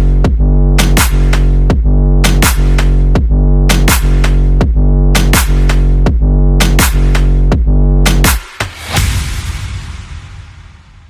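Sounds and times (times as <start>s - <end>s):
dubstep music with heavy bass: 0.0s - 10.8s.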